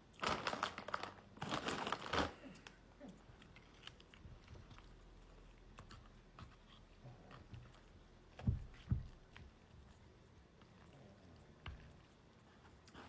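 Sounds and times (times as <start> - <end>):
crunching while eating: 0.0 - 7.9
faint chewing: 0.0 - 13.0.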